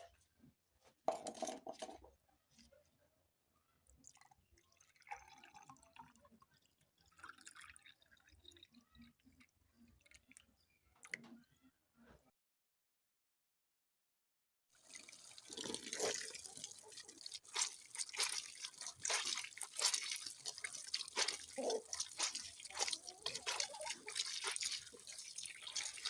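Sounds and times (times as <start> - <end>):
water dripping and splashing: 14.8 - 26.0.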